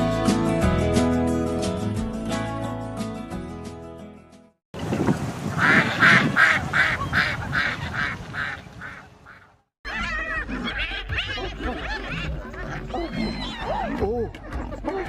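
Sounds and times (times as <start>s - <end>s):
ducks quacking: 5.5s - 15.0s.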